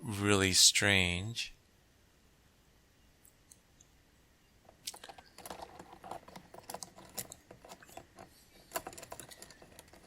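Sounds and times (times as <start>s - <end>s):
plastic toy parts clicking: 4.7s - 10.0s.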